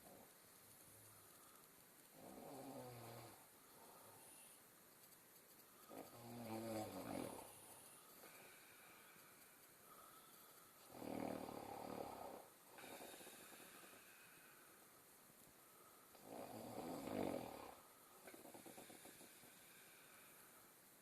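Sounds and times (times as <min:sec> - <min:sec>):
quiet breath: 0:00.0 - 0:21.0
person snoring: 0:05.9 - 0:08.6, 0:10.9 - 0:14.3, 0:16.1 - 0:20.3.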